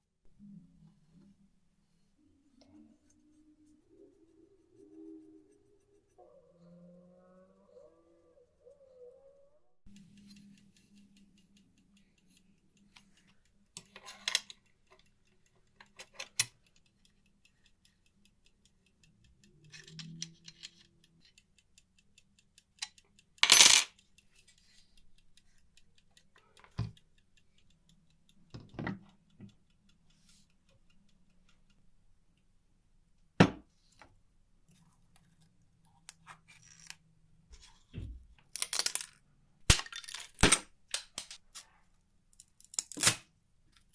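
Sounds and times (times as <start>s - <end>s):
metal objects clinking on workbench: 23.4s - 23.9s.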